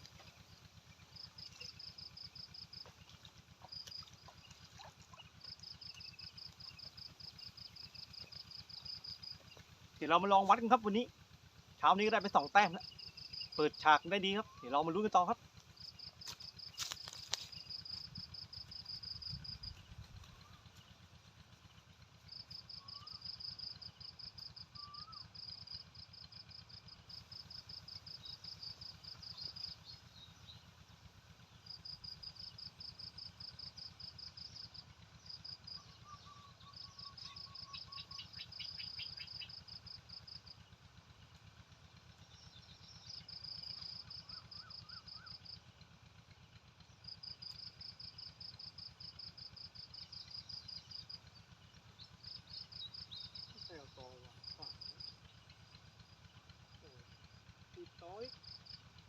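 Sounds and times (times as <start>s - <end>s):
low background rumble: 0.0s - 59.0s
whistled bird calls: 14.4s - 15.0s, 22.7s - 23.8s, 24.6s - 25.3s, 35.7s - 39.6s, 42.4s - 45.5s.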